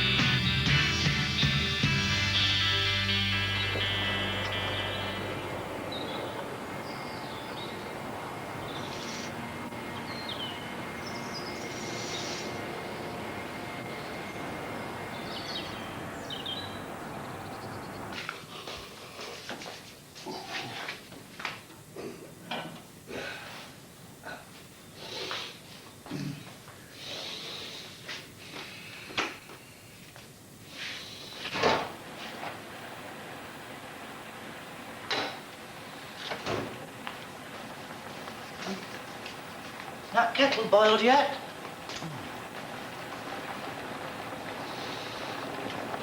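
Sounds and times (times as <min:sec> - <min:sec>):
steady background noise: 0:03.1 - 0:46.0
bird chirps: 0:03.5 - 0:08.0, 0:09.9 - 0:13.1, 0:15.1 - 0:18.1
person breathing heavily: 0:23.1 - 0:25.6, 0:26.8 - 0:29.9.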